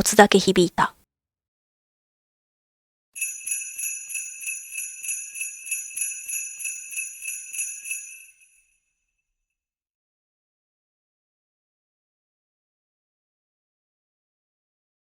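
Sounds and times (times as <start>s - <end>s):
sleigh bells jingling: 3.2s - 8.7s.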